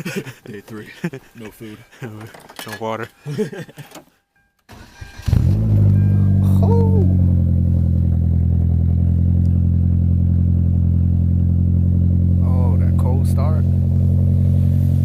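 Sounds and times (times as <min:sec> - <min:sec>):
car engine starting and idling: 0:04.6 - 0:15.0.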